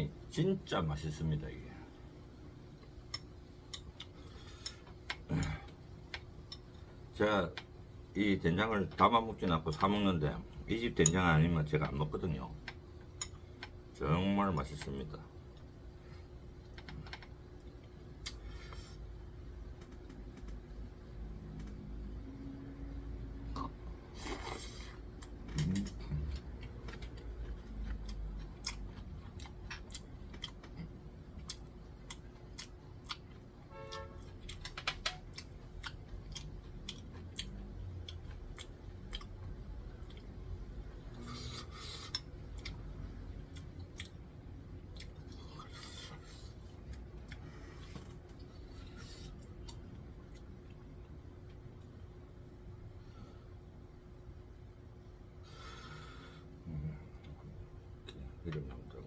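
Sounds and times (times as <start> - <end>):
chewing: 23.5 - 33.5, 34.2 - 40.4, 41.2 - 44.2.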